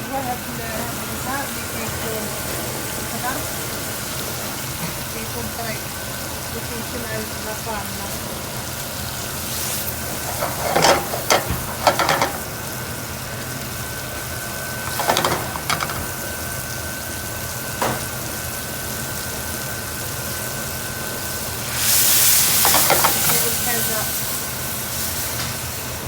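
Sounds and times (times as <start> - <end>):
loud sizzling hiss: 0.0 - 26.0
steady background hum: 0.0 - 26.0
kitchen clattering: 10.0 - 12.8, 14.8 - 16.5, 22.4 - 24.1.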